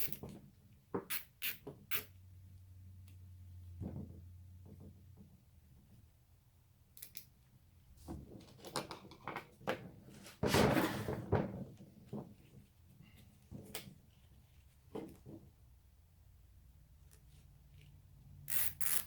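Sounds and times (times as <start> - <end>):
zip ties clicking: 0.0 - 0.2, 7.0 - 7.3, 18.5 - 19.0
zip tie rasping: 18.4 - 19.0.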